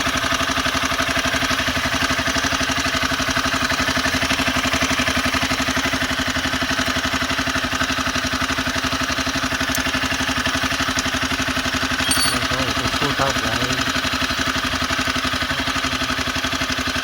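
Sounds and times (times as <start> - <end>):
motorcycle engine idling: 0.0 - 17.0.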